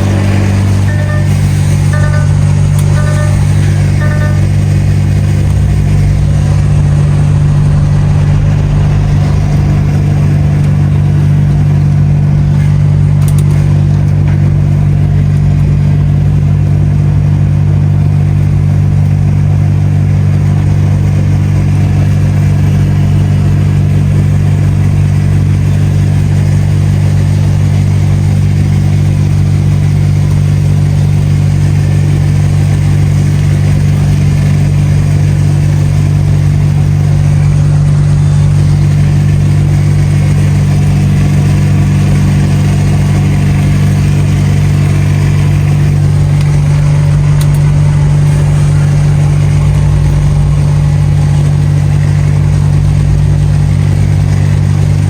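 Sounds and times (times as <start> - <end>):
road noise: 0.0 - 55.0
truck diesel engine droning: 0.0 - 55.0.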